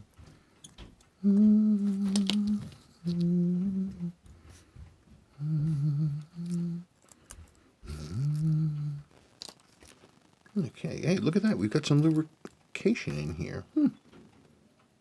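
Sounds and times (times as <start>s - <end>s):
man humming: 1.2s - 4.2s, 5.3s - 6.9s, 7.8s - 9.2s, 13.6s - 14.0s.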